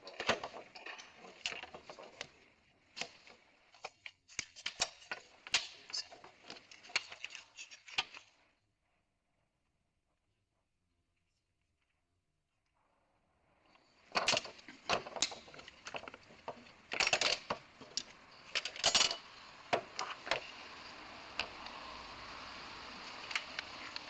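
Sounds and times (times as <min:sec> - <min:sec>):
low steady hiss: 0:12.6 - 0:24.0.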